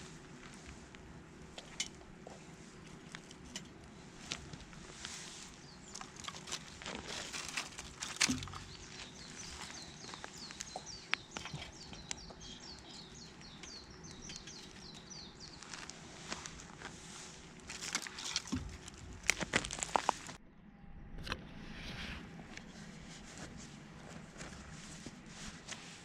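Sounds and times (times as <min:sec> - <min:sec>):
bird singing: 0:08.0 - 0:16.0
campfire crackling and popping: 0:17.6 - 0:20.4.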